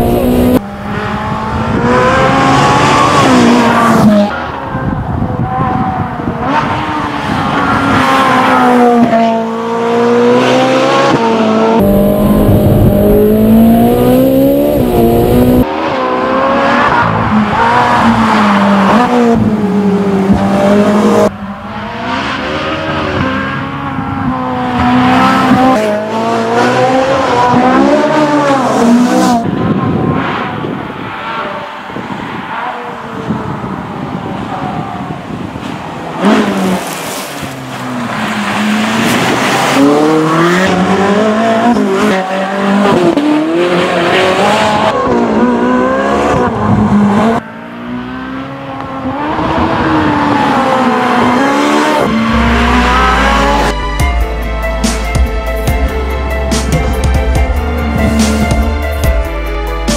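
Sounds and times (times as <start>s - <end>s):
sports car engine revving: 8.3s - 17.4s, 38.5s - 53.8s
heavy low rumble: 11.8s - 15.6s, 52.2s - 59.8s.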